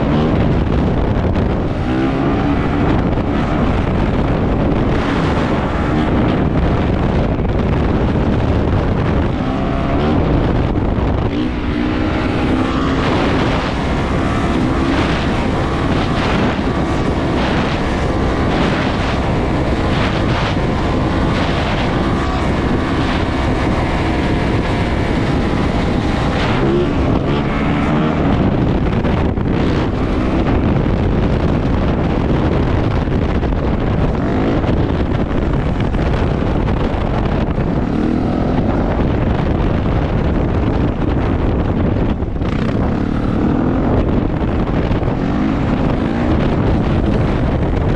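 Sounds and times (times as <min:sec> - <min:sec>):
dirt bike engine revving: 0:00.0 - 0:31.4
wind buffeting microphone: 0:00.0 - 0:47.9.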